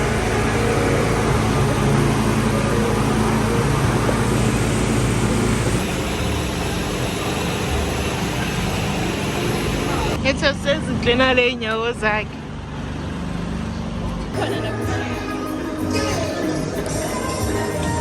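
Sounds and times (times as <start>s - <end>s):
low hum: 0.0s - 11.5s
car road and engine noise: 0.0s - 14.9s.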